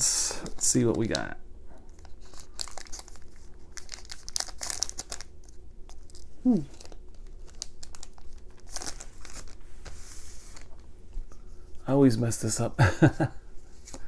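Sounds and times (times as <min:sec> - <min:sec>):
foil wrapper crinkling and tearing: 0:01.9 - 0:09.6.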